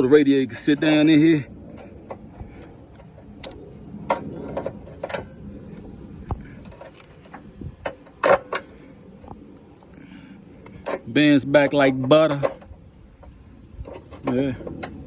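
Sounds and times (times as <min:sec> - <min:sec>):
sheet metal clicks and knocks: 0:01.7 - 0:05.3.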